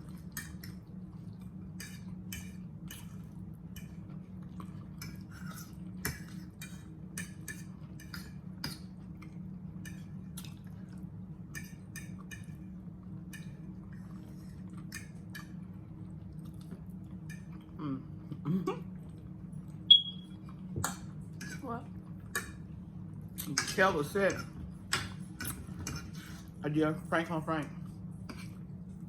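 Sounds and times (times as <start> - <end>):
chewing: 0.0 - 9.4, 10.0 - 11.1, 13.4 - 17.8
low hum: 0.0 - 29.0
cutlery clinking on dishes: 23.4 - 26.2.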